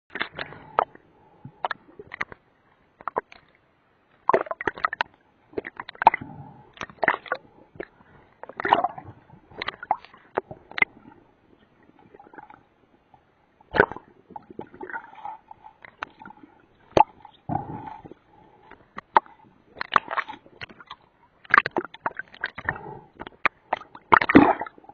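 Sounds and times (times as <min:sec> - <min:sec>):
faint steady hum: 0:00.1 - 0:24.9
water sloshing and gurgling: 0:00.1 - 0:24.9.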